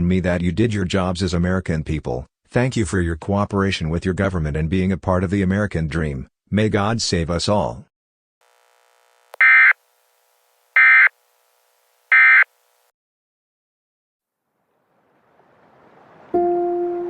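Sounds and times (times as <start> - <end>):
buzzing digital data bursts: 8.4 - 9.8, 10.8 - 11.1, 12.1 - 12.8.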